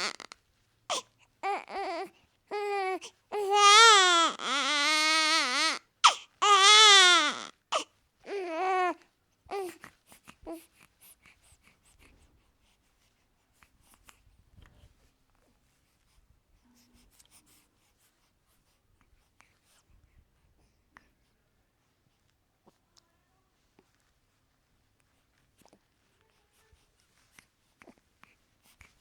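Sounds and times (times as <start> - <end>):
newborn baby crying: 0.0 - 9.8.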